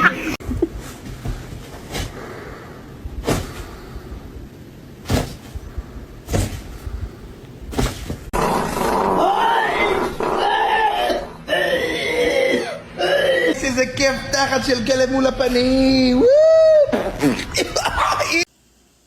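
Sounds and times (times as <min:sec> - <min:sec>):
dog growling: 0:08.4 - 0:10.7.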